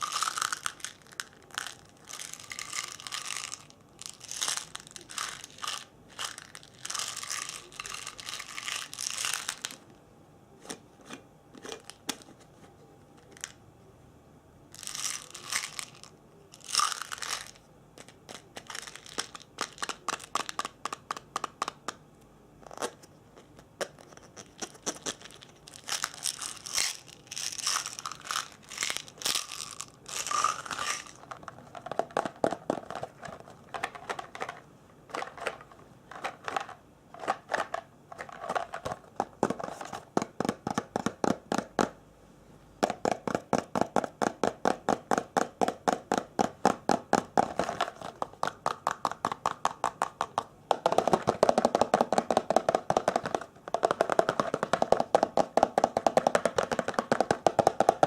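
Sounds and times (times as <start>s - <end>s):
crinkling and rustling: 22.8s - 40.4s.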